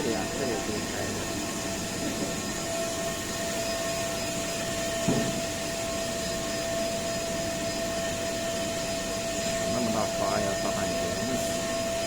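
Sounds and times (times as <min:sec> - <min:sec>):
washing machine drone and whine: 0:00.0 - 0:12.0
brief knock: 0:05.1 - 0:05.4.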